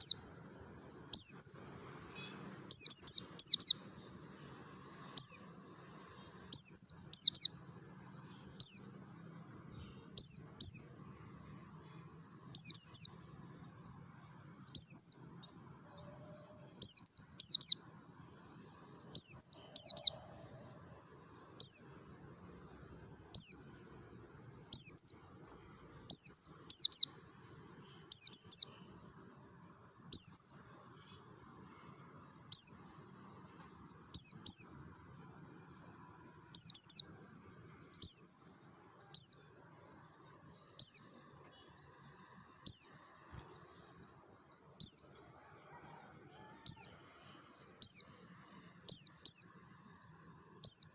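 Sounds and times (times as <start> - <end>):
bird chirping: 0.0 - 0.2, 1.1 - 3.9, 5.0 - 5.5, 6.1 - 9.0, 9.7 - 11.5, 12.5 - 13.2, 14.7 - 20.7, 21.4 - 22.0, 23.3 - 23.6, 24.7 - 25.2, 26.0 - 27.2, 27.8 - 28.9, 30.1 - 31.8, 32.5 - 32.9, 34.0 - 34.7, 36.5 - 37.1, 37.9 - 45.2, 46.6 - 46.9, 47.8 - 48.2, 48.9 - 50.9.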